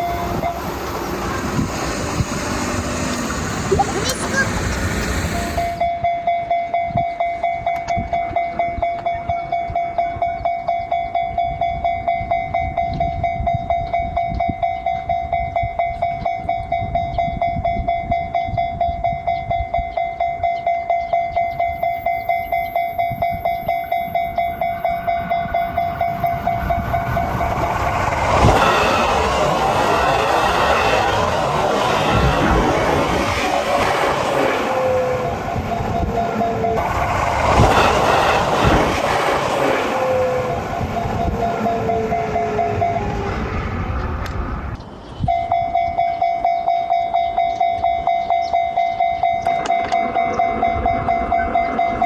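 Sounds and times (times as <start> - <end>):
train passing: 0.0 - 9.6, 20.7 - 52.0
level-crossing bell dinging: 0.0 - 43.3, 45.3 - 52.0.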